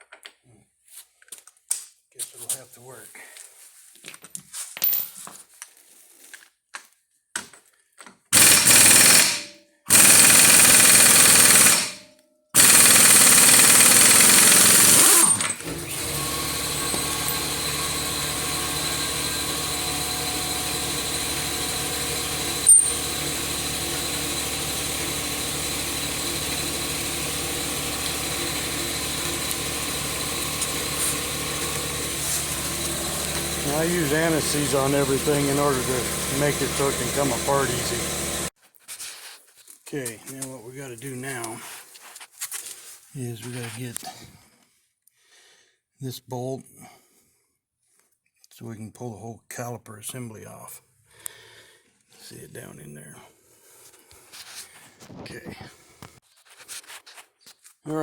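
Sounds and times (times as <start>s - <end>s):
impact wrench hammering: 8.4s - 12.0s, 12.6s - 38.5s
steady machine hum: 15.8s - 38.5s.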